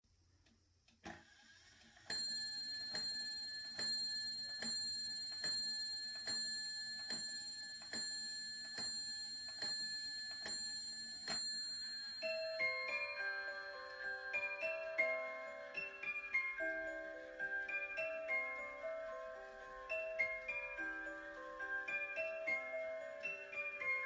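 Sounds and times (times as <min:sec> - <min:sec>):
clock bell striking: 0:02.1 - 0:15.2
tinkling chime tune: 0:02.1 - 0:24.0.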